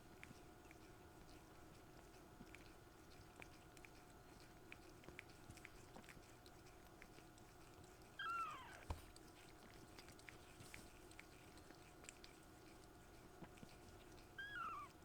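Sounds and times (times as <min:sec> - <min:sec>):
kittens moving clicks and rustles: 0:00.0 - 0:15.0
kitten meowing: 0:08.2 - 0:09.0, 0:14.4 - 0:15.0.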